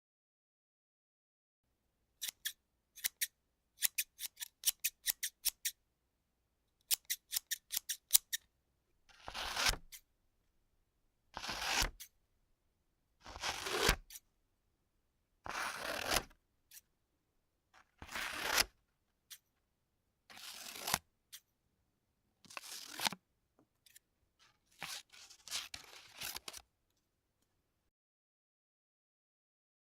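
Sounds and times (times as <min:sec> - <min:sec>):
scissors cutting paper: 0:02.2 - 0:05.7, 0:06.8 - 0:08.4, 0:09.1 - 0:10.0, 0:11.4 - 0:12.1, 0:13.2 - 0:14.2, 0:15.5 - 0:16.8, 0:18.0 - 0:19.4, 0:20.3 - 0:21.5, 0:22.5 - 0:23.2, 0:23.8 - 0:26.6
scissors clicking open and shut: 0:02.2 - 0:05.8, 0:06.8 - 0:08.4.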